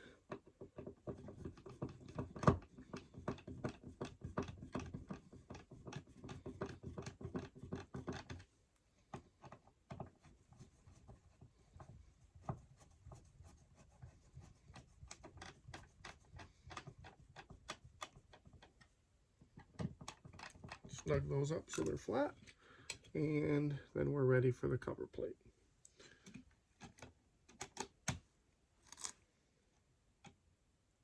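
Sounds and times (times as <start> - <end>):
screwdriver scratching and clicking: 0.8 - 8.5, 14.7 - 18.9, 19.6 - 22.0.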